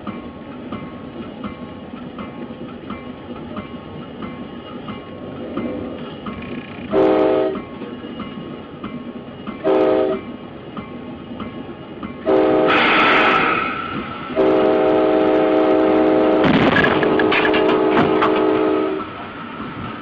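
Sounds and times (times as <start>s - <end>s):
moving train rumble: 0.0s - 20.0s
locomotive air horn blasts: 6.9s - 7.6s, 9.6s - 10.2s, 12.2s - 13.5s, 14.4s - 19.1s.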